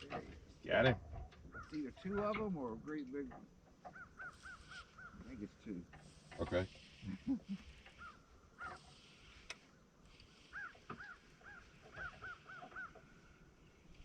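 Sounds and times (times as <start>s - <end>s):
harsh bird calls over water: 1.3s - 2.4s, 3.8s - 9.5s, 10.2s - 13.6s.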